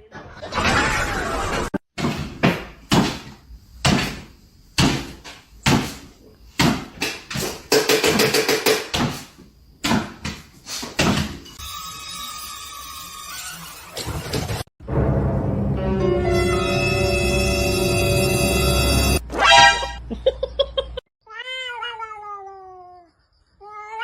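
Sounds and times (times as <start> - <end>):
knocks and thumps: 2.0 - 11.5.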